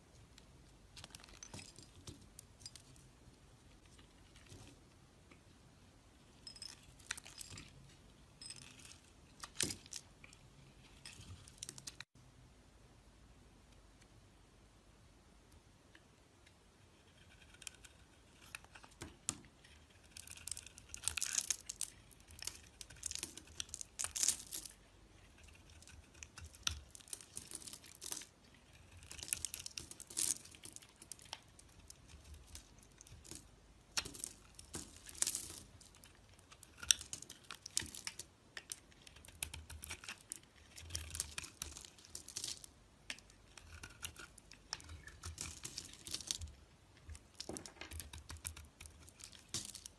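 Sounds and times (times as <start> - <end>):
knife scraping soap: 36.0 - 42.3, 43.1 - 47.2.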